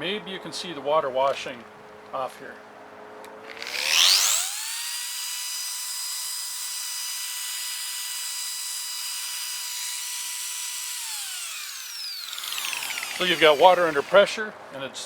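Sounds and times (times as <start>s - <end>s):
grinder motor high whine: 3.4s - 14.3s
water hissing: 12.7s - 14.3s.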